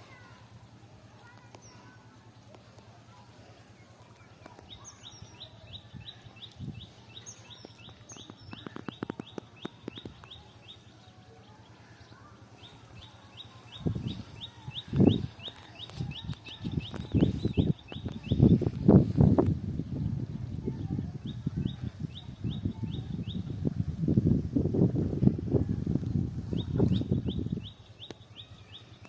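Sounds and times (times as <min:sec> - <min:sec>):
bird chirping: 0:03.7 - 0:18.8, 0:26.5 - 0:29.0.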